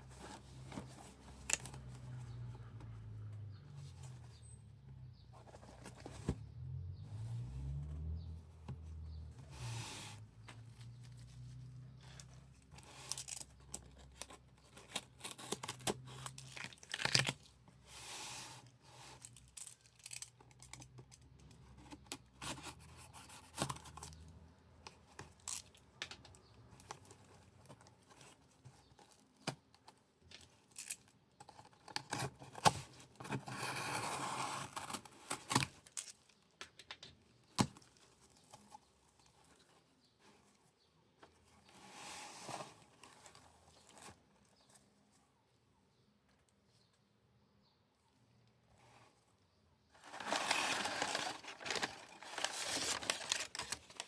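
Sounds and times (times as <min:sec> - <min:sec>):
packaging tearing and crinkling: 0:12.9 - 0:17.5, 0:50.0 - 0:54.0.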